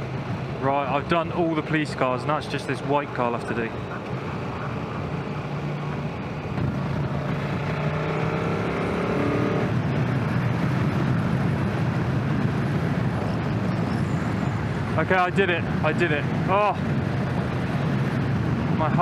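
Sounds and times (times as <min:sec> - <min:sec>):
motorcycle engine accelerating: 0:05.5 - 0:15.0.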